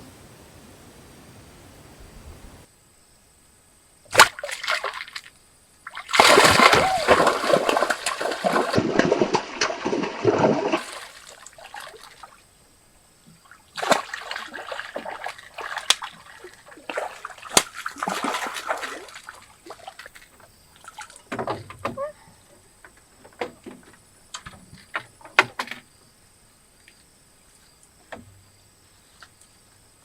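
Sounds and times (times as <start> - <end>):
water splashing and sloshing: 4.1 - 12.5, 13.3 - 22.0.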